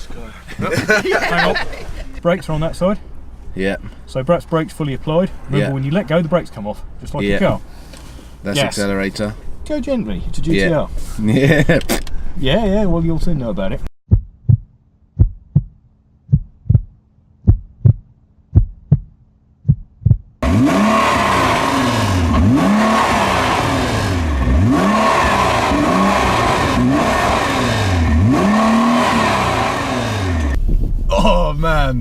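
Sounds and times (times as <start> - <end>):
heartbeat thumps: 14.1 - 20.4.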